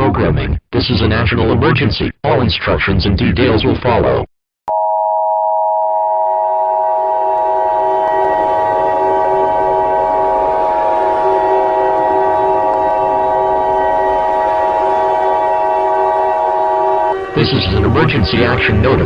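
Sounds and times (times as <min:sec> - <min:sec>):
emergency alert alarm chord: 0:04.7 - 0:19.0.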